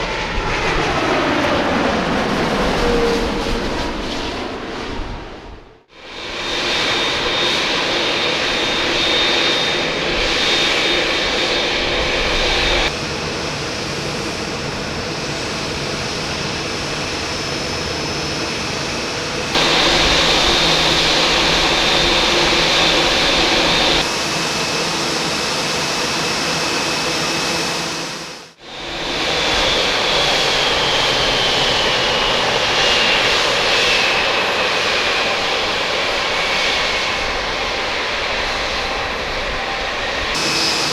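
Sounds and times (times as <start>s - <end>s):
jet engine idling whine: 0.0s - 40.9s
jet engine spooling down: 0.0s - 40.9s.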